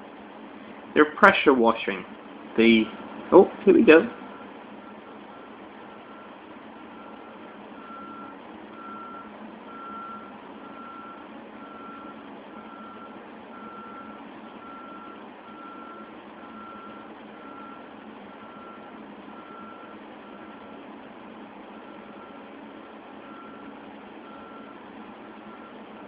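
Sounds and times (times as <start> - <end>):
reversing alarm beeping: 6.9 - 20.6, 23.2 - 24.8.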